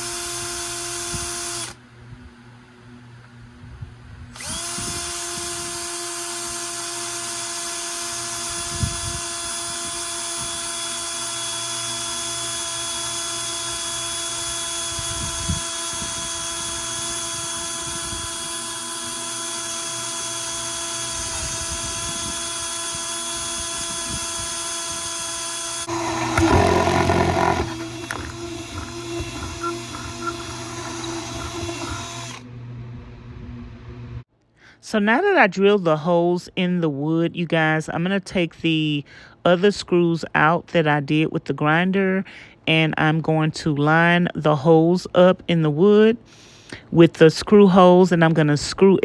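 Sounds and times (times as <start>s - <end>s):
electric drill boring wood: 0.0s - 1.8s, 4.4s - 32.4s.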